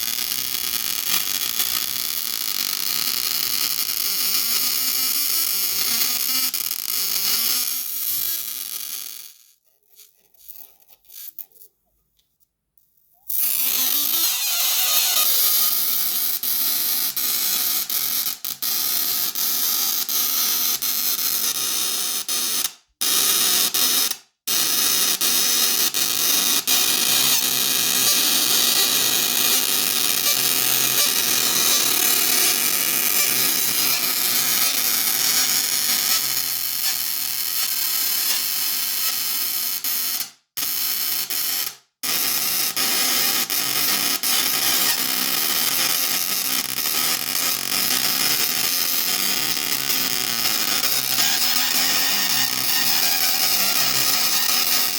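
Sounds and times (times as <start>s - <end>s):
tesla coil buzzing crackle: 0.0s - 9.5s, 26.0s - 54.9s.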